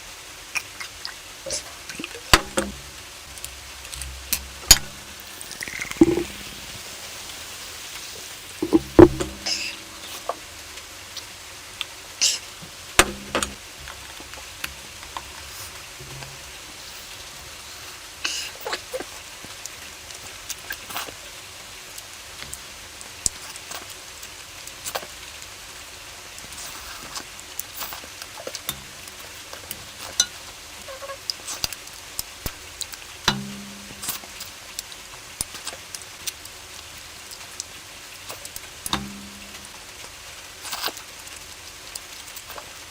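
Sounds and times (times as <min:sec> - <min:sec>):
person chewing with wet smacks: 0:00.5 - 0:02.6, 0:04.4 - 0:06.7, 0:17.8 - 0:21.3, 0:26.4 - 0:30.6, 0:31.3 - 0:42.9.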